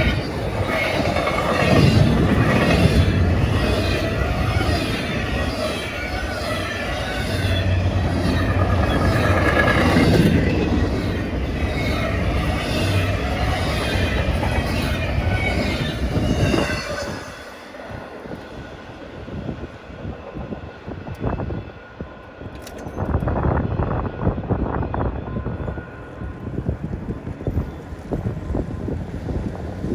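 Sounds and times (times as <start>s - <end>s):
wheel squeal: 0.0s - 18.8s
rhythmic train clatter: 0.0s - 29.9s
train wheels on rails: 0.0s - 29.9s.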